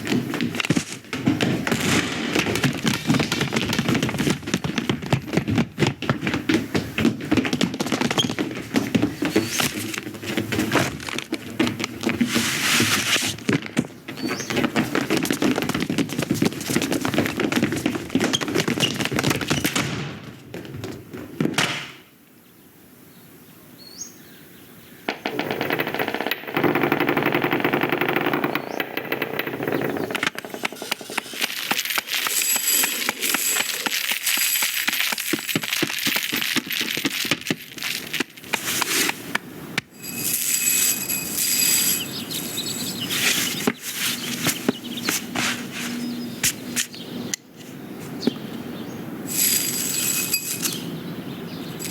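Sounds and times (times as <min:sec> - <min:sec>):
rapid clicks taps and clattering: 0:25.1 - 0:38.6.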